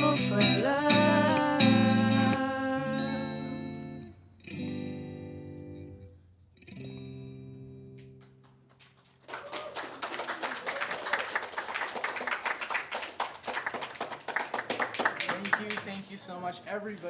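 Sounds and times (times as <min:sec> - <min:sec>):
guitar chords ringing: 0:00.0 - 0:08.2
audience clapping: 0:08.1 - 0:16.1.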